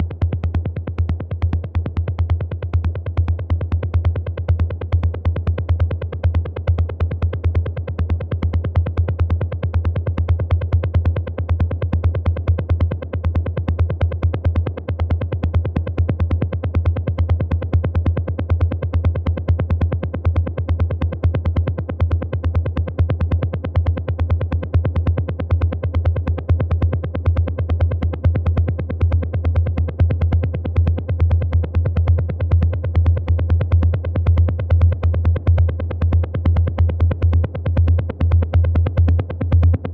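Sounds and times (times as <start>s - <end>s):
drum machine kick and bass: 27.8s - 39.9s.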